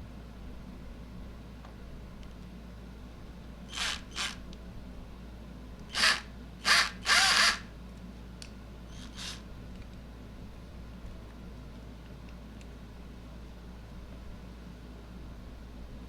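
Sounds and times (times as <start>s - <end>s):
small power tool cutting metal: 3.7s - 4.4s, 5.9s - 7.7s, 8.9s - 9.4s.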